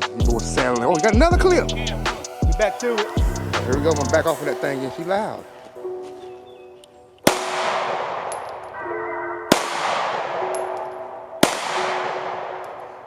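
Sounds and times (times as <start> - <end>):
faint background music: 0.0 - 13.0
pistol shots with echo: 7.2 - 8.8, 9.5 - 13.0.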